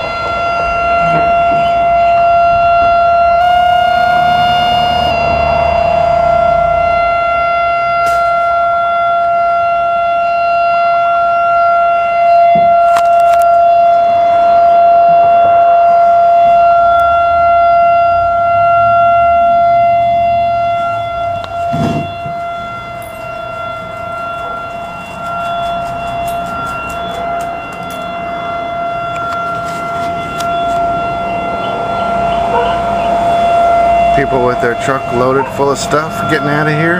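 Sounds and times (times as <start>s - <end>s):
warning siren steady tone: 0.0s - 36.9s
brief thump: 21.7s - 22.4s.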